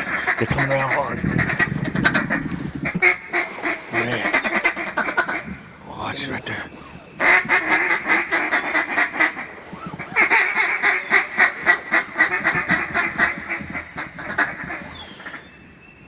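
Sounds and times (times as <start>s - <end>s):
duck call quacks: 0.0s - 5.5s, 7.2s - 15.4s.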